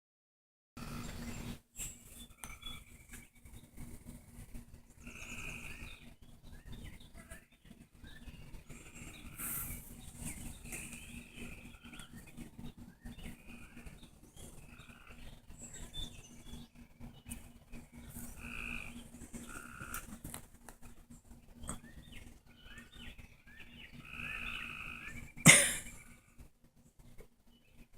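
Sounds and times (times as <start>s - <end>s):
faint steady hum: 0.8s - 27.9s
frogs calling: 5.0s - 6.1s, 13.2s - 15.8s, 18.2s - 20.2s, 24.0s - 26.2s.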